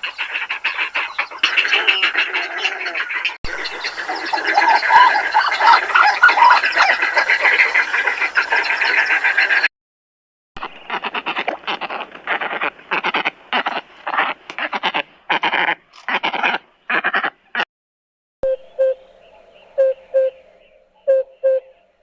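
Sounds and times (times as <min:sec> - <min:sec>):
stork harsh rasping calls: 0:00.0 - 0:09.7, 0:10.6 - 0:17.6.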